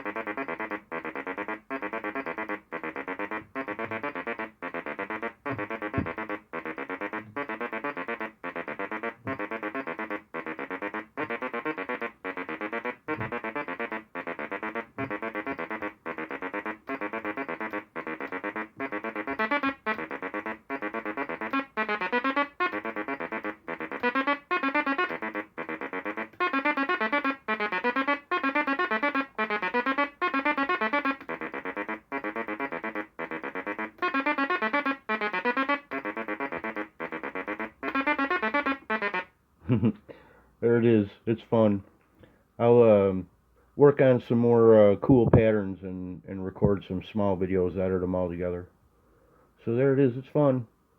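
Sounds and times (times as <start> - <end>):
buzzy synthesizer sequence: 0.0 - 39.9, 43.8 - 48.6.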